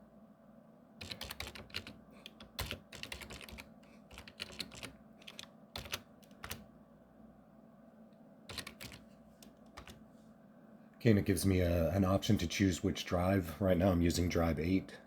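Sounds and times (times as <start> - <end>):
computer keyboard typing: 1.0 - 6.7, 8.5 - 10.0.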